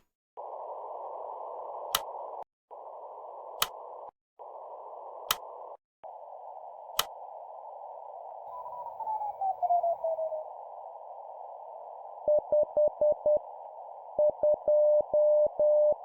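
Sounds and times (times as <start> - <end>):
sharp click: 1.9 - 2.1, 5.2 - 5.5, 7.0 - 7.2.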